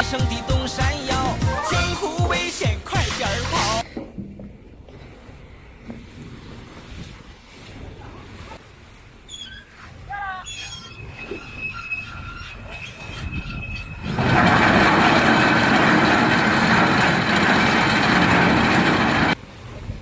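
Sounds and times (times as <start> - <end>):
loud steady rushing noise: 14.2 - 19.4.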